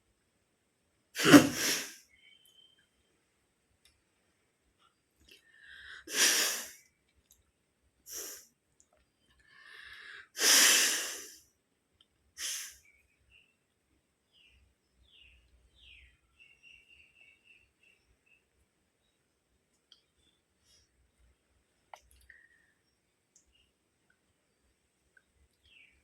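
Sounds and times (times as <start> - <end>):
woman sneezing: 1.2 - 1.9.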